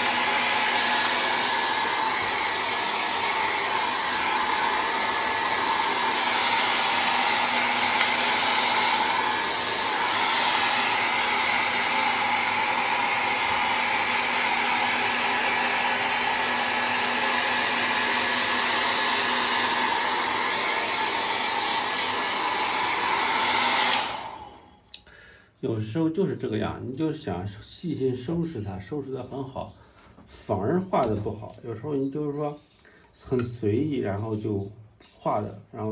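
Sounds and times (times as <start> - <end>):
hair dryer blowing: 0.0 - 25.0.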